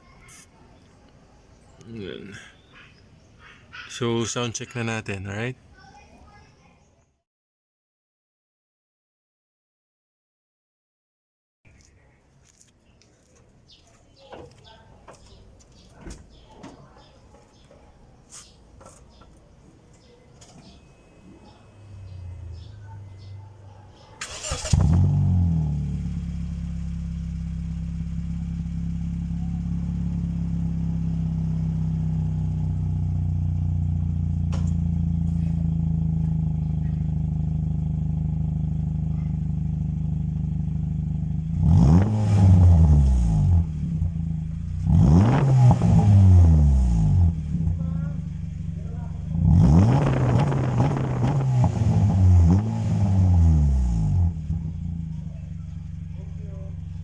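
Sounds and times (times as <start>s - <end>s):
car engine starting and idling: 20.4s - 57.0s.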